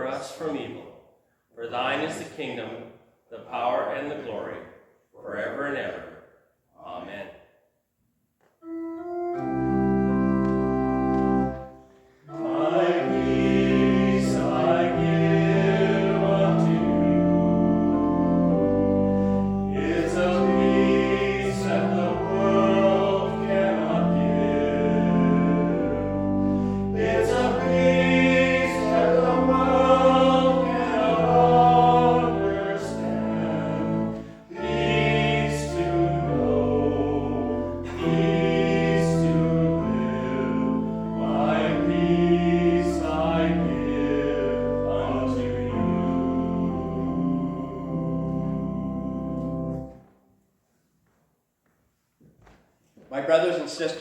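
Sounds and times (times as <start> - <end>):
voices singing a hymn: 8.6 - 50.0
church organ chords: 8.6 - 50.4.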